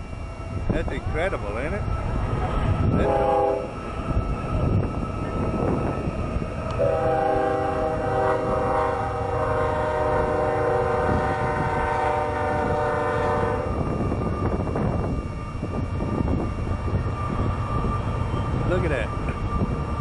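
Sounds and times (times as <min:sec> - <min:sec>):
train rumbling: 0:00.0 - 0:20.0
train horn blast: 0:02.4 - 0:03.8, 0:06.6 - 0:13.9.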